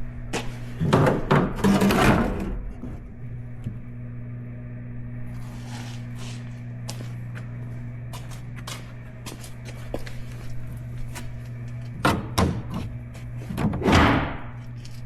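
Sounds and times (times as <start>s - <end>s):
low hum: 0.0s - 15.0s.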